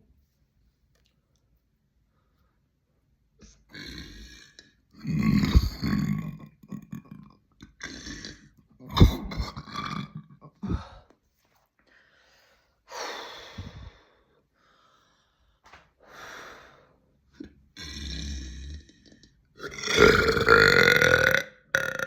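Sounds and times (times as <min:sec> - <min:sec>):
deep burp: 0:03.7 - 0:11.0, 0:17.4 - 0:22.0
breathy exhale: 0:11.9 - 0:17.0.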